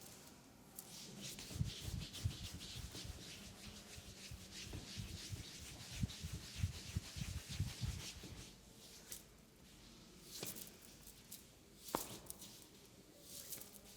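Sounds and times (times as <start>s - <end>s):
hands rubbing skin: 0.8s - 8.5s.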